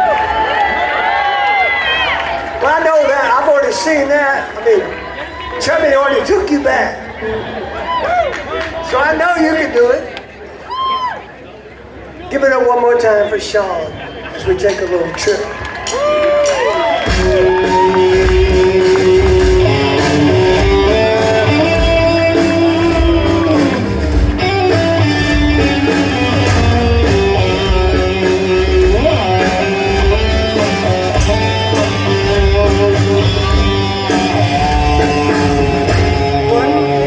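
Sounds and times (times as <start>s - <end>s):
live rock band playing: 15.9s - 37.0s
electric guitar bending notes: 17.0s - 37.0s.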